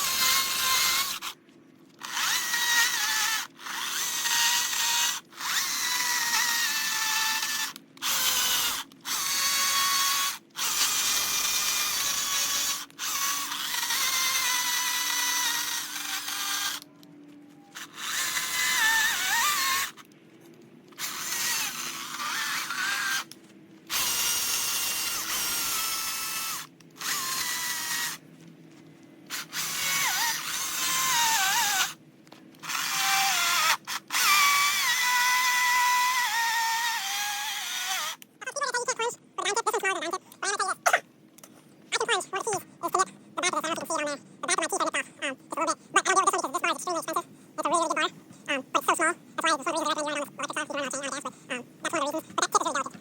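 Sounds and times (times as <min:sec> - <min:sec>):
power carving tool cutting wood: 0:00.0 - 0:01.3, 0:02.0 - 0:16.9, 0:17.8 - 0:20.0, 0:21.0 - 0:23.3, 0:23.9 - 0:28.2, 0:29.3 - 0:32.0, 0:32.6 - 0:38.2.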